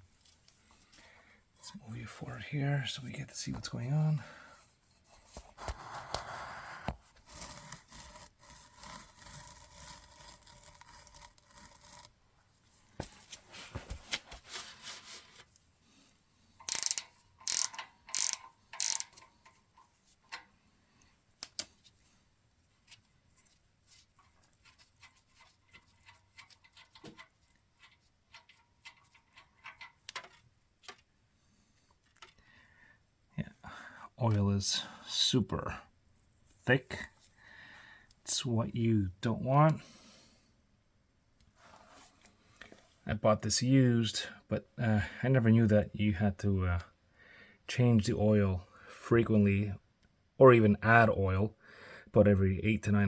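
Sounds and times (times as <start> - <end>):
wrench scraping metal: 16.6 - 19.4.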